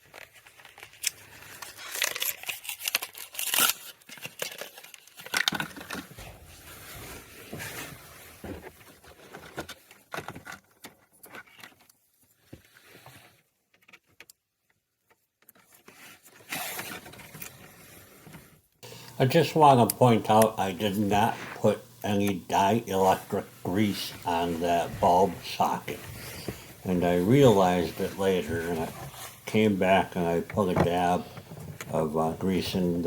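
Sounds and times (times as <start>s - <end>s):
hands handling plastic parts: 0.0s - 12.7s.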